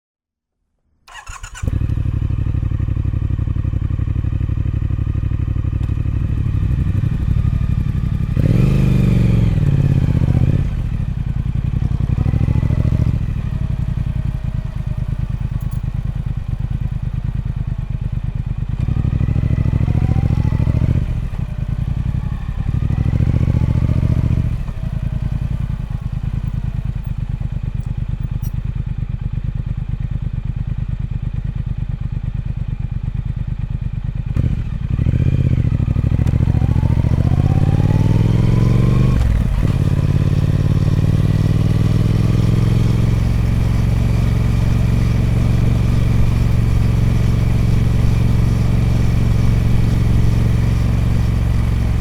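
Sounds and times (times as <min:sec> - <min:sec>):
motorcycle engine starting and idling: 0:01.1 - 0:52.0
engine revving: 0:06.5 - 0:14.2, 0:18.8 - 0:26.8, 0:34.4 - 0:52.0.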